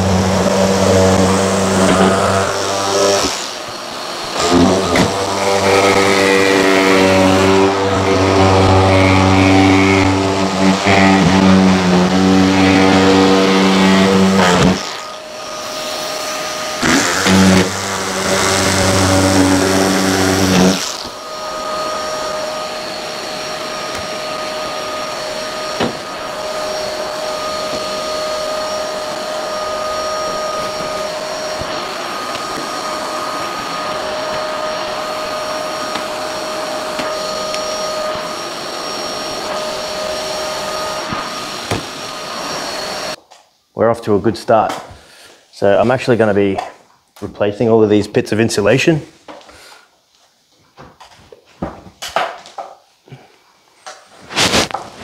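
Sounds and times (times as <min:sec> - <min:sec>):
drywall cutter motor hum: 0:00.0 - 0:43.2
vacuum whine: 0:00.0 - 0:48.0, 0:52.5 - 0:55.0.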